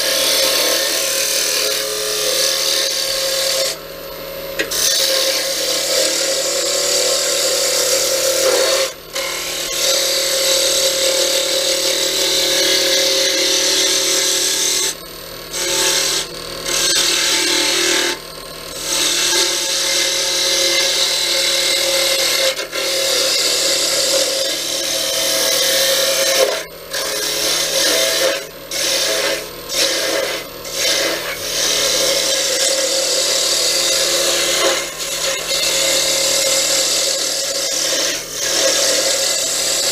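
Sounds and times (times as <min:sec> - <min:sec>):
tool rasping on spinning wood: 0:18.9 - 0:39.9.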